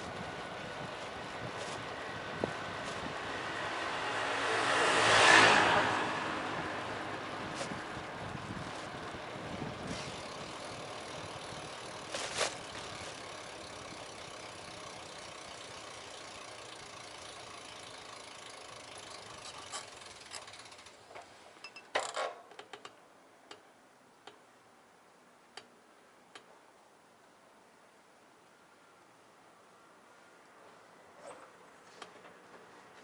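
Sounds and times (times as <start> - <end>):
bicycle rolling: 0.0 - 21.7
road noise: 0.0 - 21.7, 22.5 - 33.0.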